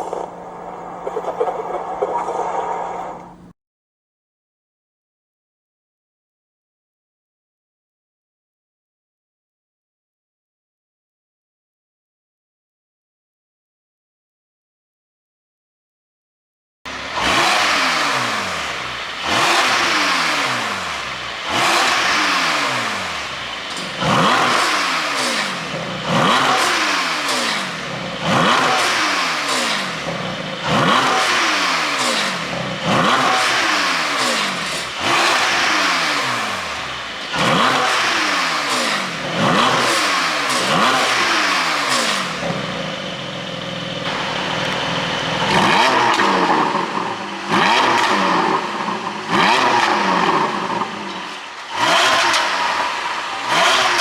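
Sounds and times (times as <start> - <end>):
car engine revving from idle: 0.0 - 3.5, 16.9 - 54.0.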